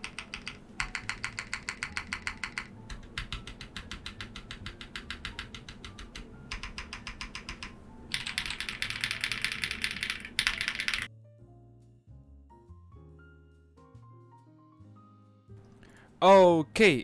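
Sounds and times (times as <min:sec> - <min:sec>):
mechanical keyboard typing: 0:00.0 - 0:11.1
soft background music: 0:00.0 - 0:17.0.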